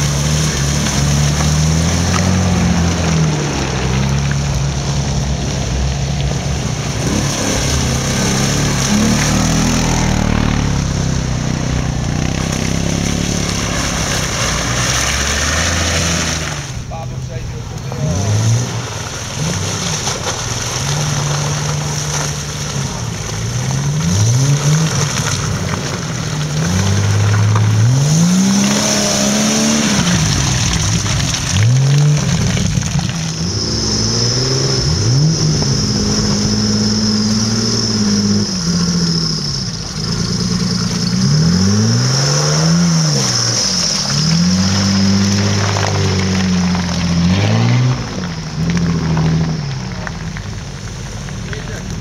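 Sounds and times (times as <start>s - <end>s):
engine revving hard: 7.0s - 16.7s, 26.6s - 48.2s.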